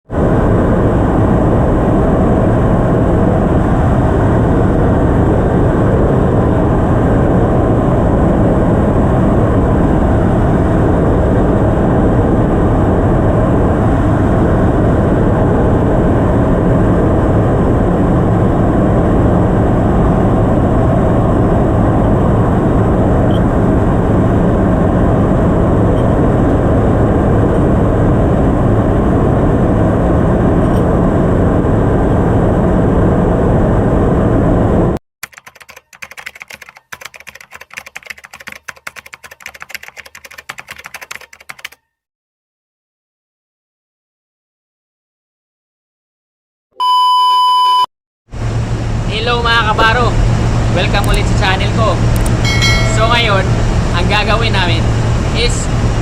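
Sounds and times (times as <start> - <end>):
engine-room machinery drone: 0.1 - 35.0, 48.3 - 56.0.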